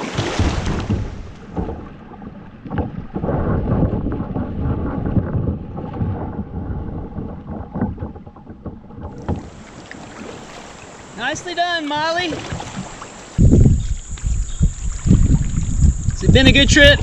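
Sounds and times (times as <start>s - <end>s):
water splashing around boat: 0.0s - 17.0s
wind on microphone: 2.6s - 8.4s, 12.3s - 17.0s.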